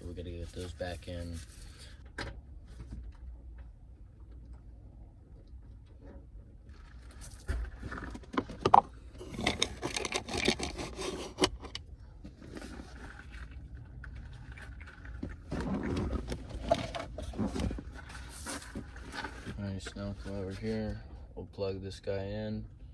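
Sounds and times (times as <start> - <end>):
screws clicking and rattling: 9.2 - 11.6.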